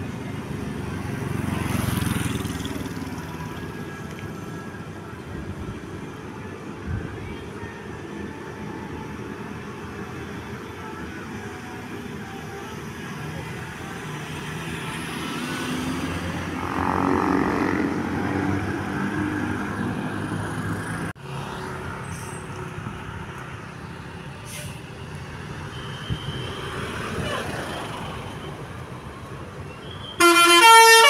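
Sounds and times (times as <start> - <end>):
traffic noise: 0.0 - 31.0
bus diesel engine rumbling: 15.8 - 31.0
air brake hiss: 24.4 - 24.9.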